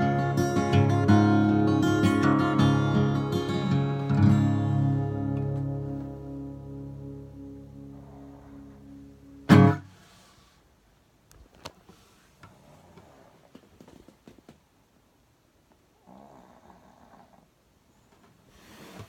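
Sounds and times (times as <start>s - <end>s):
guitar chord ringing: 0.0s - 9.9s
dog snoring: 8.0s - 8.7s, 16.0s - 17.5s.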